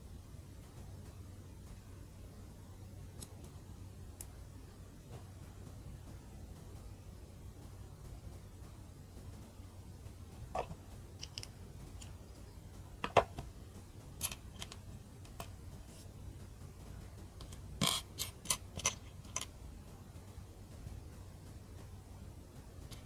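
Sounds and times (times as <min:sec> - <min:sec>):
plastic building bricks clicking: 0:10.6 - 0:12.4, 0:13.0 - 0:15.6, 0:17.4 - 0:19.6.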